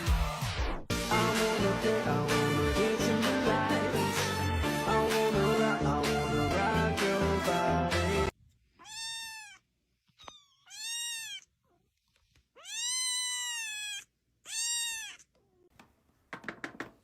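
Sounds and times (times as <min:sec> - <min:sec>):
cat meowing: 0:08.8 - 0:11.5, 0:12.5 - 0:15.7.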